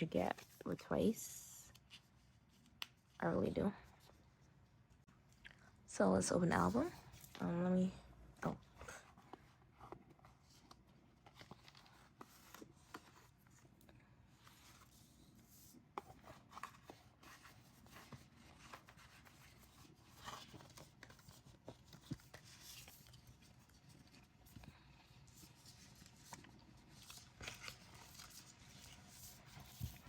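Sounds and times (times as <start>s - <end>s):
paper rustles: 8.7s - 13.7s, 14.3s - 30.0s.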